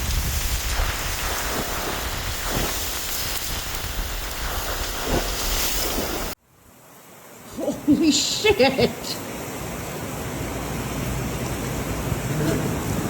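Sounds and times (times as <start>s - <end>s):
blizzard wind rushing: 0.0s - 6.4s, 9.2s - 13.0s
wind buffeting microphone: 0.0s - 6.4s, 9.5s - 13.0s.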